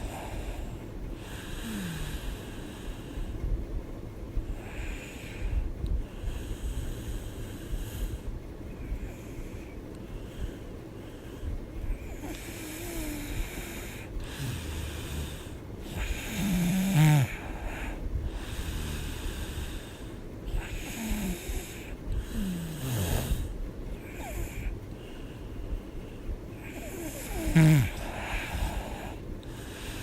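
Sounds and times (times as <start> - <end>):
woman snoring: 0.0 - 2.6, 12.0 - 24.7, 26.6 - 30.0.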